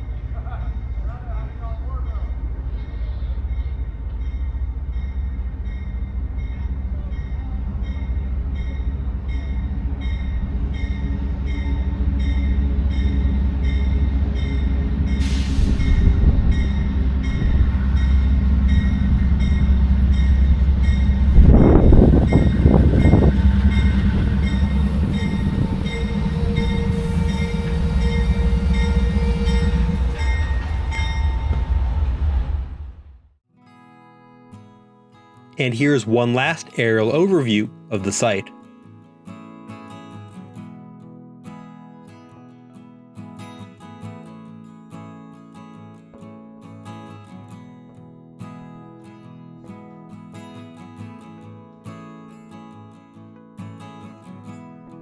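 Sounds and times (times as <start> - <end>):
diesel locomotive rumbling: 0.0 - 33.3.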